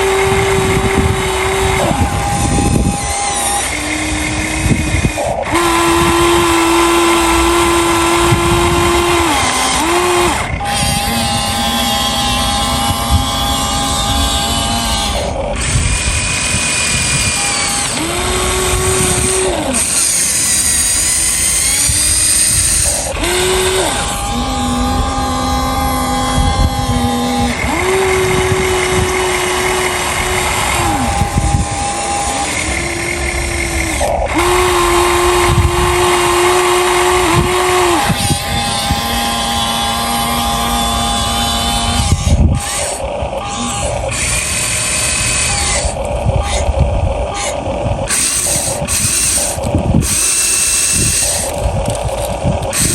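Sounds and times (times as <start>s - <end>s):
small electric motors whining: 0.0s - 52.9s.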